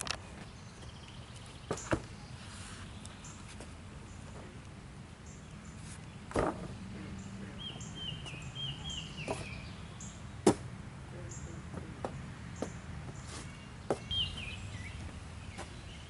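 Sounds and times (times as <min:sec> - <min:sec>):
bird chirping: 0:00.0 - 0:04.6, 0:05.2 - 0:10.5, 0:11.1 - 0:16.0
sharp knocks: 0:10.4 - 0:10.6.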